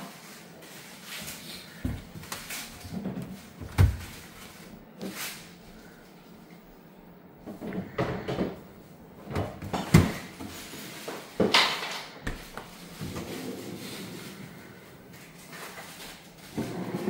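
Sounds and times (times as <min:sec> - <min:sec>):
objects knocking and clunking: 0:07.4 - 0:13.4.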